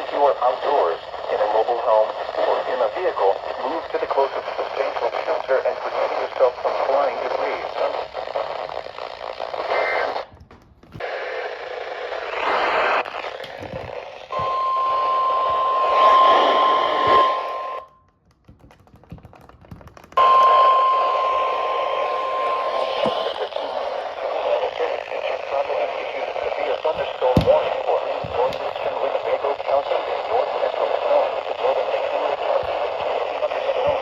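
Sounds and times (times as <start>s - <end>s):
radio static hiss: 0.0s - 10.3s, 10.9s - 17.8s, 20.2s - 34.0s
radio alert tone: 11.0s - 17.9s, 20.2s - 34.0s.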